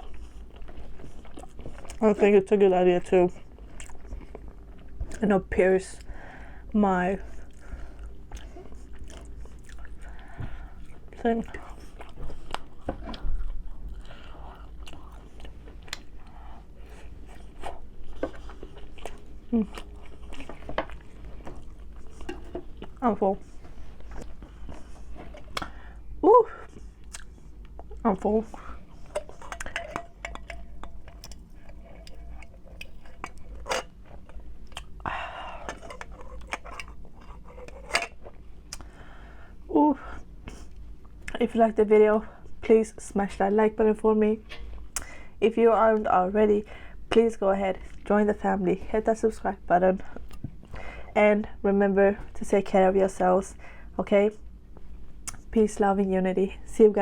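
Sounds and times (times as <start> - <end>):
chewing food: 0.0 - 2.3, 3.3 - 5.2, 7.3 - 25.8, 26.7 - 38.9.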